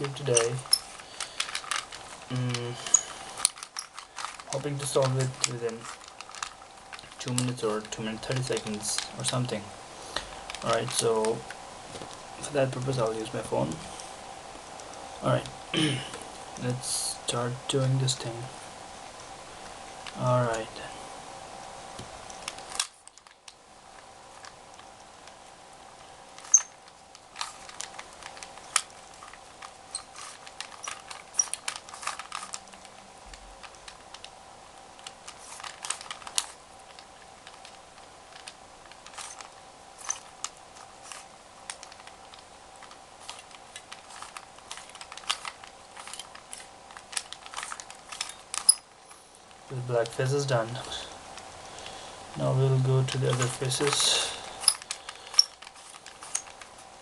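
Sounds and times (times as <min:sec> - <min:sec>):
plastic puzzle cube clicking: 0:00.0 - 0:09.6, 0:10.2 - 0:13.0, 0:22.3 - 0:23.6, 0:26.4 - 0:48.9, 0:52.4 - 0:57.0
faint steady hum: 0:00.0 - 0:57.0.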